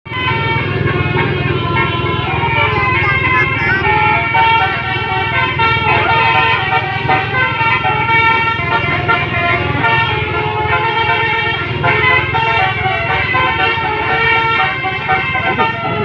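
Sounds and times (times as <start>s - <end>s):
musical bus air horns: 0.1s - 16.0s.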